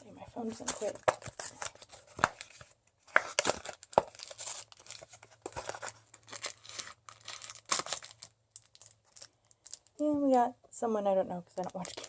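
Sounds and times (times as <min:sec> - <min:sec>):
packaging tearing and crinkling: 0:00.6 - 0:09.9.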